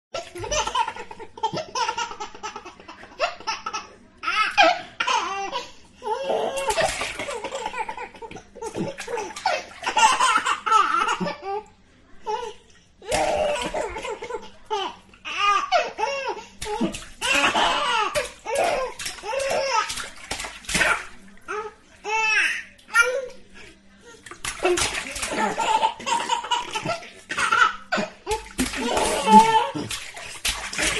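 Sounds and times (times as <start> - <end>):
water splashing in bathtub: 0.2 - 3.6, 6.3 - 11.4, 13.0 - 15.9, 16.5 - 30.9
baby laughing and babbling: 25.0 - 30.0.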